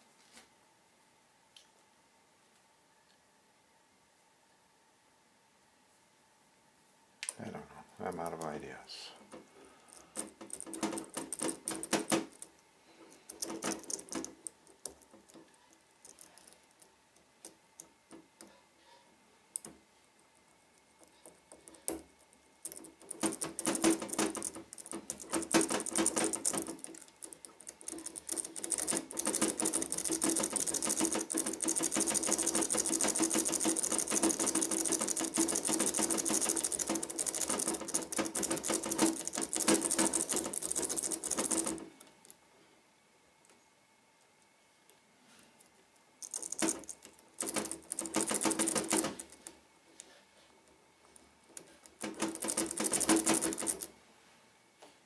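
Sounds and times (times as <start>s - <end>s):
lock pick clicking and scraping: 13.2s - 17.6s, 22.6s - 41.8s.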